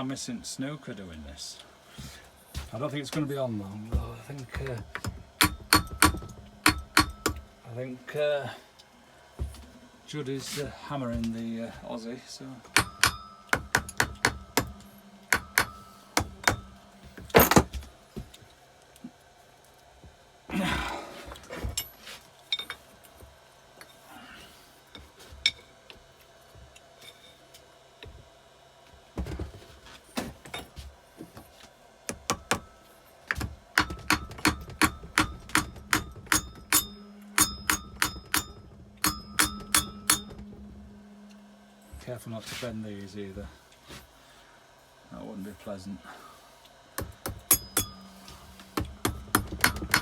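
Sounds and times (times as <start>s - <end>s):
metal tools clicking and tapping: 4.5s - 7.5s, 12.7s - 17.7s, 32.2s - 40.6s, 47.0s - 50.0s
tool scrape: 12.7s - 17.7s, 42.0s - 42.9s, 47.4s - 50.0s.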